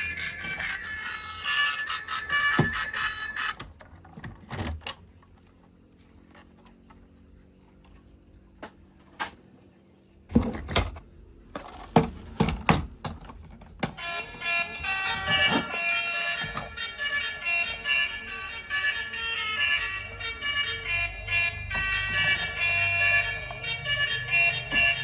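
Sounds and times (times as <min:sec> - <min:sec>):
music: 0:00.0 - 0:03.6, 0:13.9 - 0:25.0.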